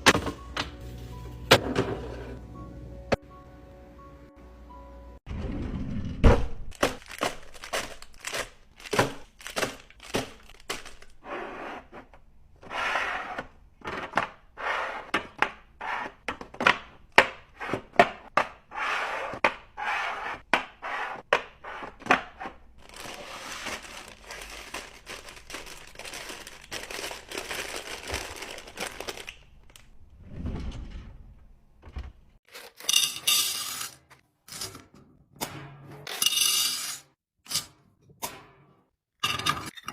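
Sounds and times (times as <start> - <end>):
packaging crinkling and tearing: 6.7 - 11.2, 22.8 - 29.9.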